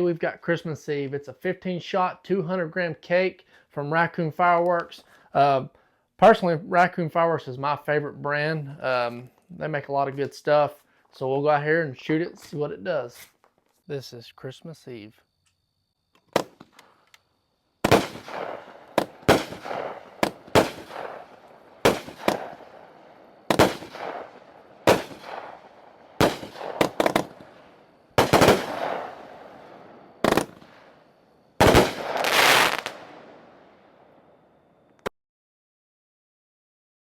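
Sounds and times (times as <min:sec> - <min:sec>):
firework shots: 0:17.8 - 0:31.0, 0:31.6 - 0:34.1.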